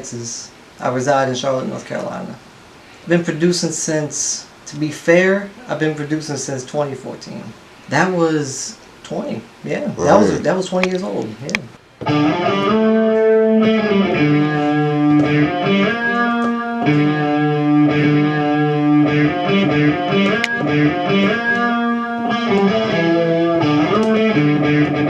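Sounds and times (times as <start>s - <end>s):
electric guitar chords: 12.0s - 25.0s.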